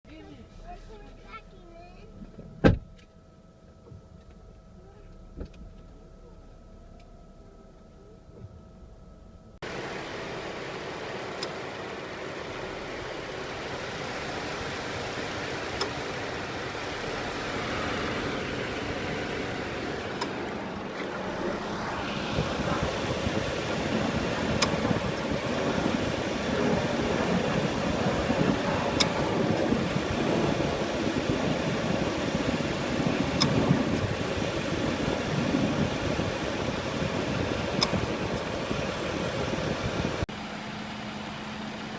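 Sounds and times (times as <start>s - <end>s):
car engine idling roughly: 9.6s - 41.9s
sharp tick: 15.7s - 16.0s, 33.3s - 34.1s.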